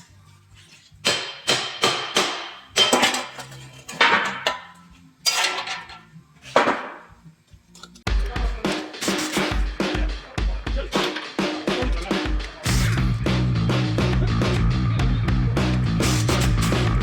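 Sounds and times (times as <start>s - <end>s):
faint background music: 0.0s - 17.0s
hammer striking metal: 1.0s - 3.4s, 8.1s - 10.2s, 10.9s - 13.2s, 16.0s - 17.0s.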